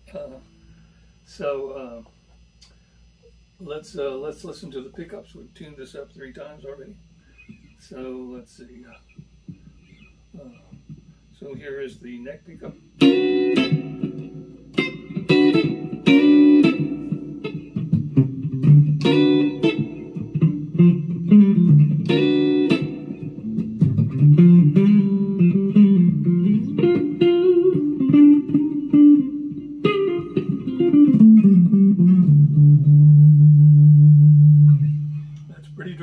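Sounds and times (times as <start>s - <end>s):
electric guitar chords: 9.1s - 36.0s
low electric guitar melody: 12.6s - 36.0s.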